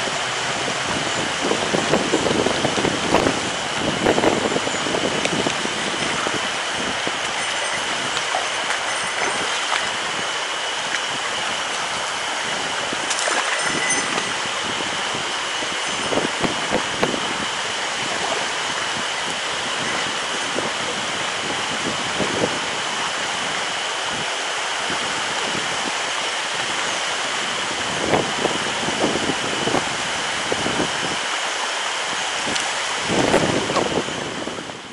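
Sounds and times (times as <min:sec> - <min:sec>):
stream rushing over rocks: 0:00.0 - 0:14.8
steady high-pitched note: 0:05.8 - 0:12.9, 0:13.5 - 0:19.2.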